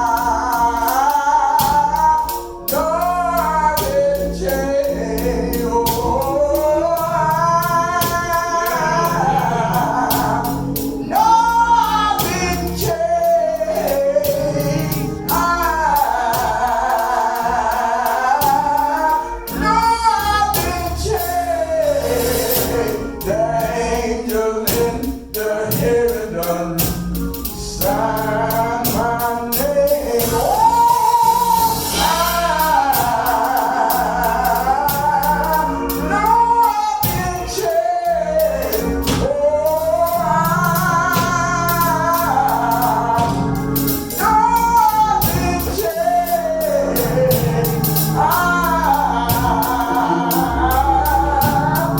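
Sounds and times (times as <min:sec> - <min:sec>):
choir singing gospel song: 0:00.0 - 0:51.9
instruments playing: 0:00.0 - 0:51.9
percussion beat: 0:00.0 - 0:51.9.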